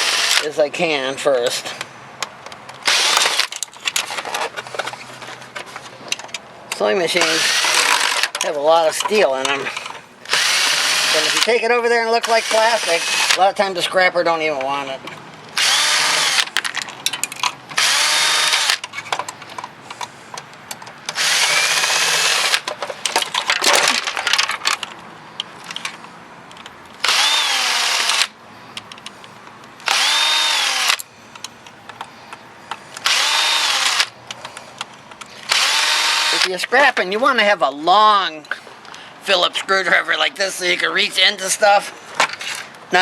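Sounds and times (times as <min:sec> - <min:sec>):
power drill whine: 0:00.0 - 0:00.4, 0:07.4 - 0:08.2, 0:10.3 - 0:11.4, 0:15.6 - 0:16.4, 0:17.8 - 0:18.8, 0:21.2 - 0:22.6, 0:27.0 - 0:28.3, 0:29.8 - 0:31.0, 0:33.0 - 0:34.1, 0:35.5 - 0:36.4
clatter of parts: 0:02.4 - 0:06.4, 0:07.2 - 0:11.5, 0:16.3 - 0:27.3.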